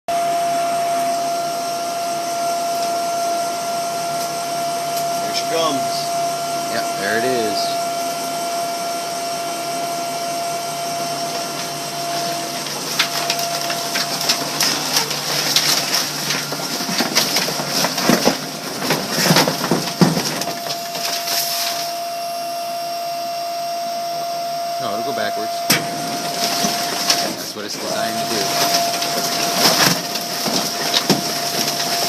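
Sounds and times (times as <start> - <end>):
paper crackling and crunching: 11.2 - 21.9, 26.0 - 32.0.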